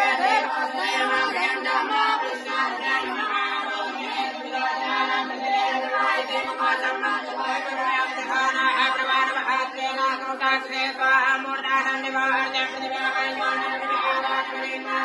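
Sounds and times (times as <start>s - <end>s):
voices chanting mantras: 0.0s - 15.0s.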